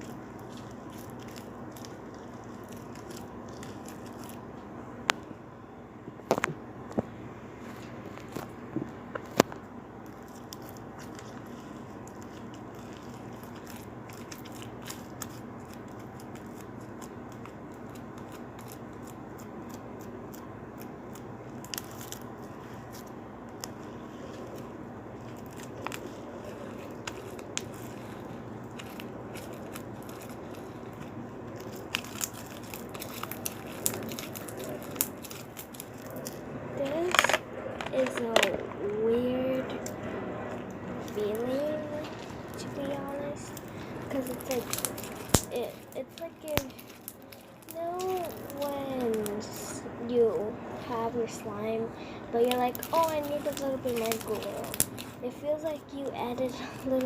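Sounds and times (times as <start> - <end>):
low background hum: 0.0 - 57.0.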